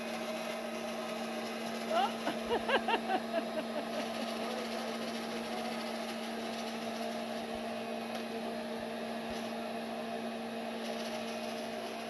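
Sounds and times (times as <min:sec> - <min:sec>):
vacuum cleaner running: 0:00.0 - 0:12.0
high vocal sounds: 0:01.9 - 0:02.8.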